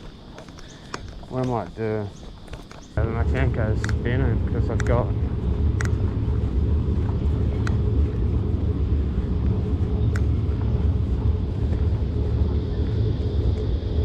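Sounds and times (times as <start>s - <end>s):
faint clicks: 0.0s - 8.3s, 9.4s - 10.8s
faint hum: 0.0s - 14.0s
low rumble: 3.0s - 14.0s.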